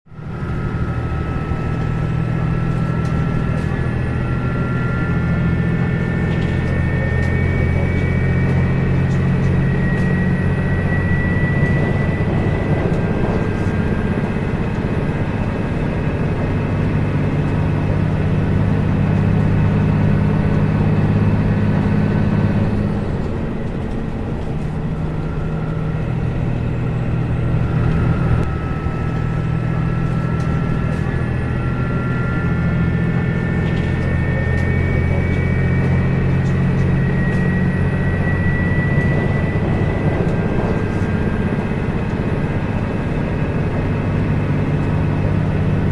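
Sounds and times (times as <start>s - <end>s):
diesel engine droning: 0.1s - 45.9s.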